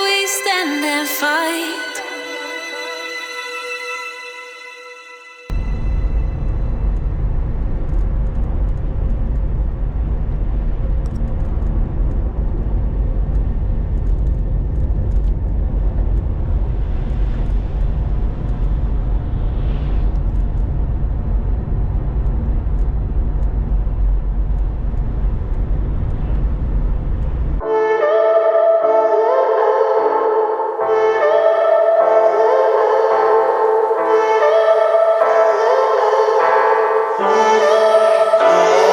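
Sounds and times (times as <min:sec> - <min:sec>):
music: 0:00.0 - 0:08.1, 0:27.6 - 0:38.9.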